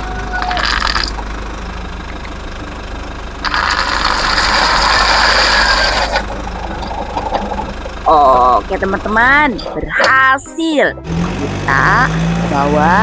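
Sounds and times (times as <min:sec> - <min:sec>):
steady low hum: 0:00.0 - 0:10.4.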